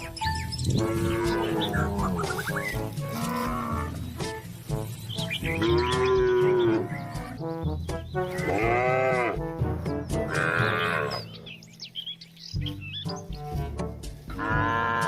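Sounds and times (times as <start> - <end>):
cows mooing: 0.7 - 4.1, 5.4 - 7.4, 8.3 - 9.6, 10.2 - 11.4, 14.3 - 15.0.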